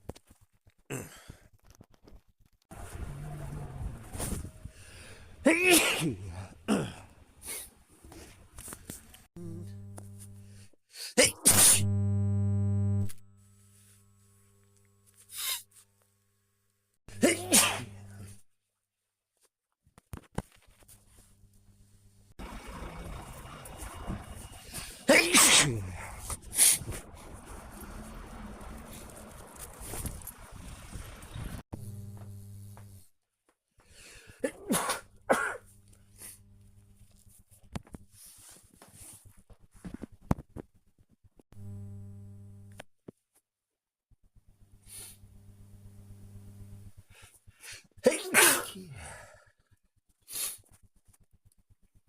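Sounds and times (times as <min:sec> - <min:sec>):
person sneezing: 0:05.5 - 0:07.7, 0:17.1 - 0:18.3, 0:25.0 - 0:26.9, 0:34.4 - 0:35.6, 0:48.0 - 0:49.3.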